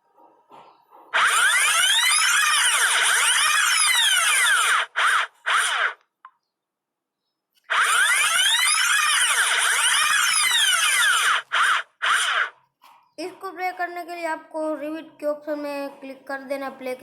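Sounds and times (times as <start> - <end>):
whirring pitch sweep sound effect: 1.2 - 6.0, 7.7 - 12.5.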